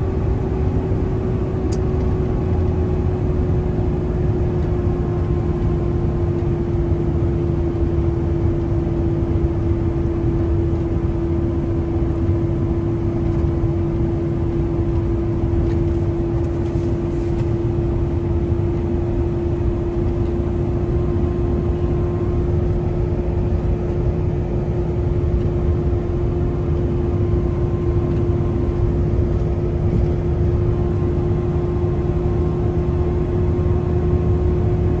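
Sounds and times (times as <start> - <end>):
truck engine and road drone: 0.0 - 35.0.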